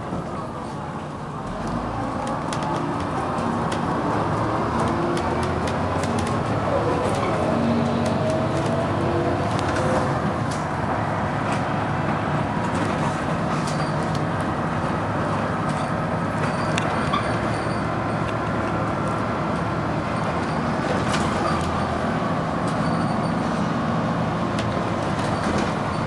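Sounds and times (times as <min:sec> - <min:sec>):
bus body clicks and rattles: 0:00.0 - 0:26.0
bus engine running: 0:00.0 - 0:26.0.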